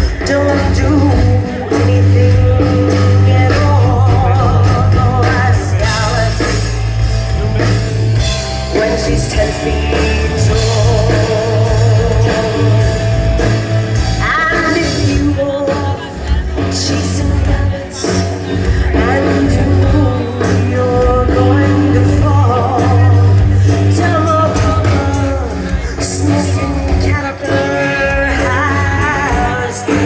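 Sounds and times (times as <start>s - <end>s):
live rock band: 0.0s - 30.0s
person singing long notes: 8.3s - 30.0s.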